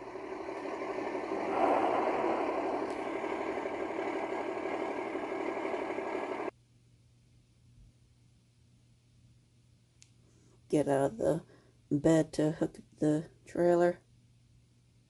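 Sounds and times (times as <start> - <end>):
vehicle engine running: 0.0 - 6.5.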